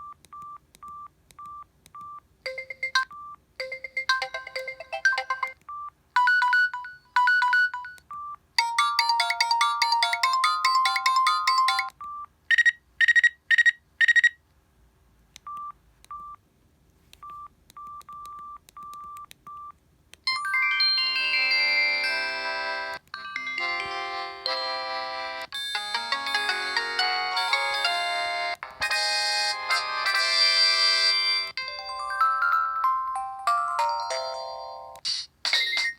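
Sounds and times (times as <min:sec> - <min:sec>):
phone ringtone melodies: 0:02.5 - 0:05.6, 0:06.2 - 0:08.0, 0:08.6 - 0:12.0, 0:20.3 - 0:35.9.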